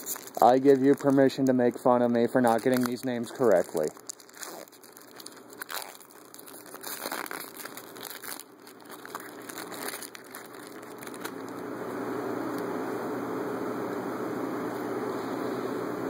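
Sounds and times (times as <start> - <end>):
wrapper crinkling and tearing: 0.0 - 11.6.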